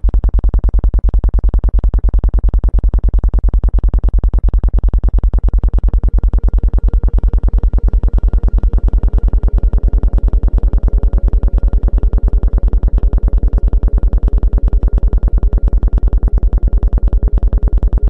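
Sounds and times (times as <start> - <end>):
deep electronic tone pulsing: 3.5 - 18.0
faint high sustained tones: 6.0 - 18.0.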